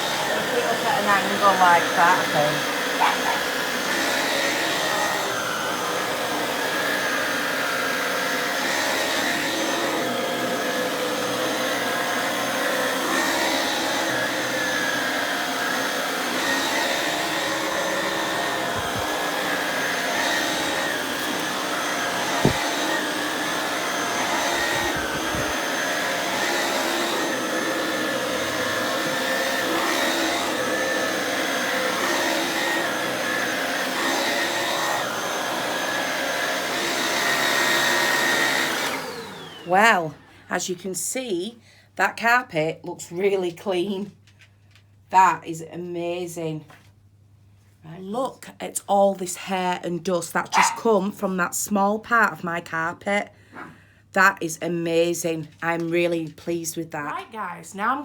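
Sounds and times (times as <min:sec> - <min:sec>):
vacuum cleaner on carpet: 0:00.0 - 0:40.3.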